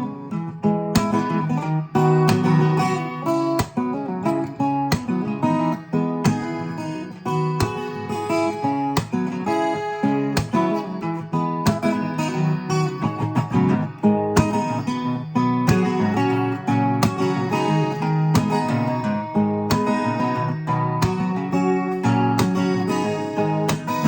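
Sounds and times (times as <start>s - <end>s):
acoustic guitar music: 0.0s - 24.0s.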